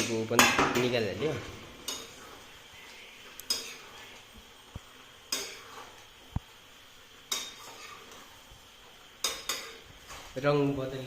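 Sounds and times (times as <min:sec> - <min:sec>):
metal spoon clanking against pan: 0:00.0 - 0:01.1, 0:01.8 - 0:02.2, 0:03.4 - 0:03.9, 0:05.3 - 0:05.7, 0:07.3 - 0:08.2, 0:09.2 - 0:09.8
faint sizzle: 0:00.0 - 0:11.0.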